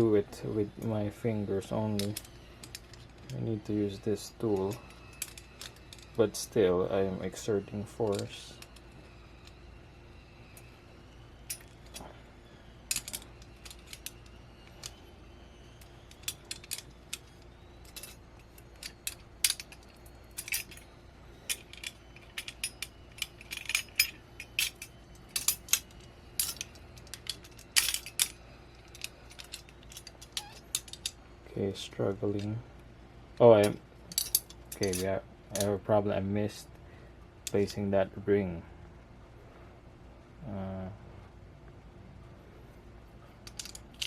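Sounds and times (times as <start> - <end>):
metal parts clicking against tool: 1.6 - 6.5, 7.4 - 9.6, 11.5 - 12.1, 12.9 - 15.0, 15.8 - 31.2, 33.6 - 35.8, 37.4 - 37.8, 43.4 - 44.0.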